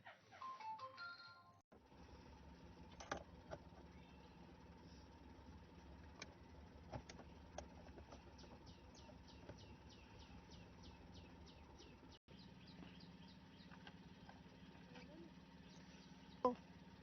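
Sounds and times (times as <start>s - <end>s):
low steady hum: 1.7s - 17.0s.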